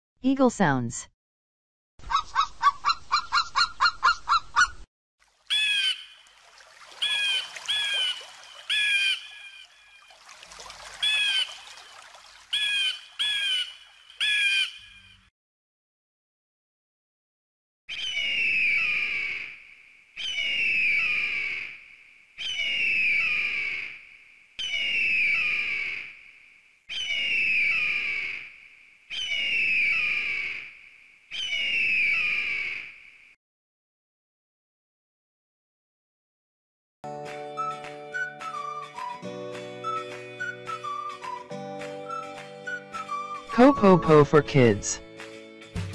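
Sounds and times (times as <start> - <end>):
eagle calls: 5.5 - 6.2, 7.0 - 9.7, 11.0 - 11.6, 12.5 - 15.0.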